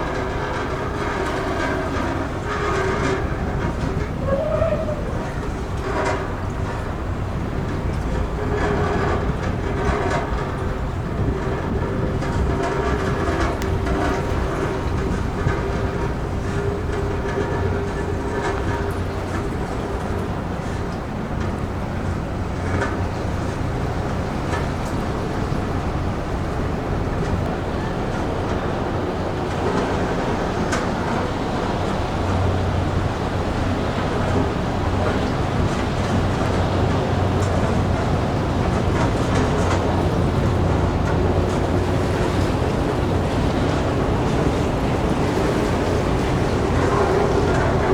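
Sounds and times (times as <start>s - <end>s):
ship engines humming: 0.0s - 47.9s
ship hull rumbling and scraping: 0.0s - 47.9s
ship scraping and screeching: 2.5s - 6.0s
faint held squeal: 4.2s - 5.5s.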